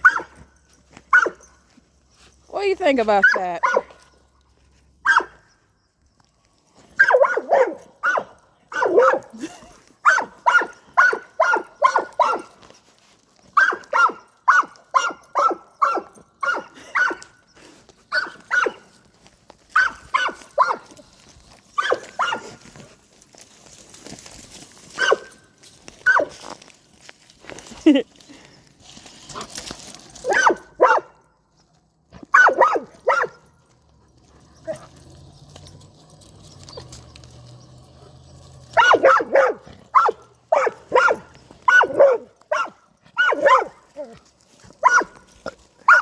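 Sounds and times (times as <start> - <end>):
dog barking: 0.0 - 0.4, 1.1 - 1.4, 3.2 - 4.0, 5.0 - 5.4, 7.0 - 9.4, 10.0 - 12.6, 13.6 - 17.2, 18.1 - 18.8, 19.8 - 20.9, 21.8 - 22.6, 25.0 - 25.4, 26.0 - 26.3, 30.2 - 31.2, 32.3 - 33.5, 38.8 - 44.2, 44.8 - 45.2.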